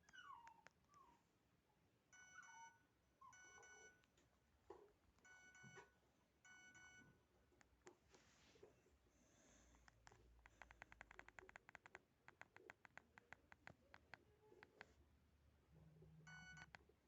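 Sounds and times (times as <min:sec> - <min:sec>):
electronic beeping ringtone: 0:02.2 - 0:04.0.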